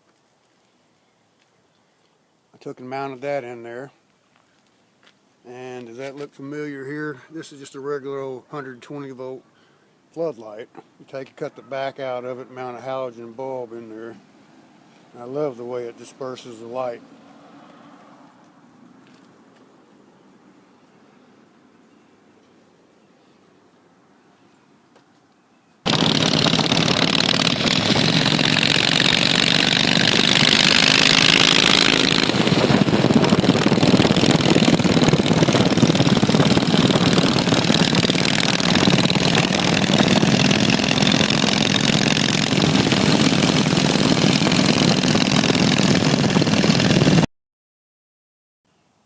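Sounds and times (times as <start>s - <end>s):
motorcycle engine running: 25.9s - 47.3s.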